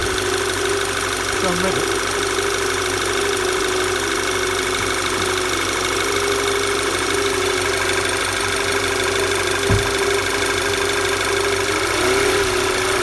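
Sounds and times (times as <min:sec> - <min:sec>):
car engine idling with knocking: 0:00.0 - 0:13.0
low thump: 0:09.6 - 0:10.1.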